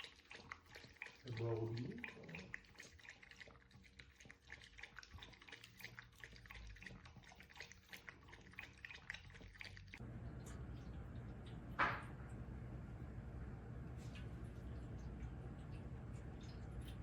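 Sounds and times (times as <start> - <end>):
water dripping and trickling: 0.0 - 12.4, 14.0 - 17.0.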